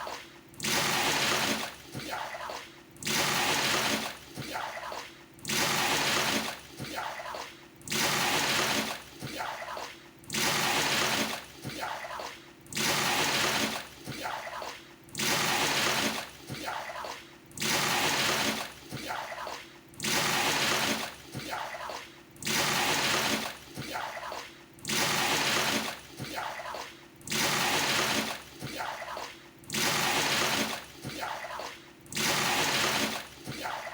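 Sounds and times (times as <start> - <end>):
water splashing from a dipper: 17.6 - 19.2, 27.3 - 33.7.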